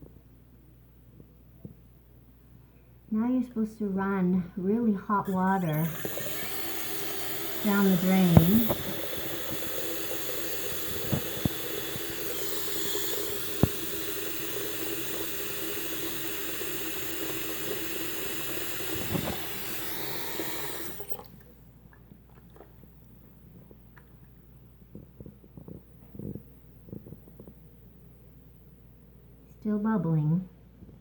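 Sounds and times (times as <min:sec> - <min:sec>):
water running from tap into sink: 0:05.3 - 0:21.4
faint crackles in drain: 0:05.3 - 0:27.9.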